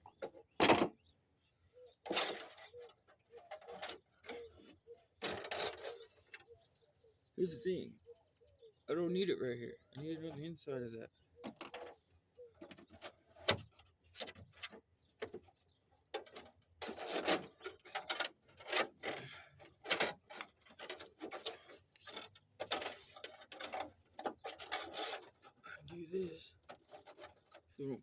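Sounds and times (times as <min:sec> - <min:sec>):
hands handling wire and tools: 0:02.0 - 0:06.6, 0:11.4 - 0:25.7, 0:26.5 - 0:27.8.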